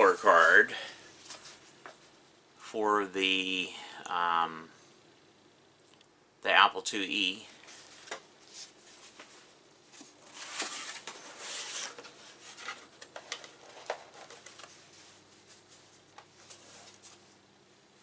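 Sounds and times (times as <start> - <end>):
packaging rustling: 10.0 - 17.2.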